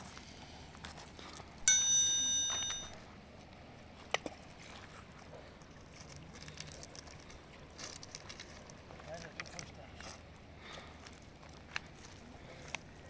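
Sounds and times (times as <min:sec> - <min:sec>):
faint outdoor background: 0:00.0 - 0:13.0
bright metallic ring: 0:01.6 - 0:03.0.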